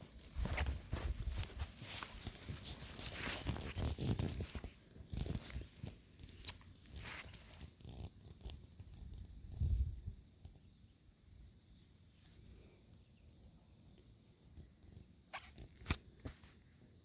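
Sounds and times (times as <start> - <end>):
rustling and scuffing: 0.0 - 7.8.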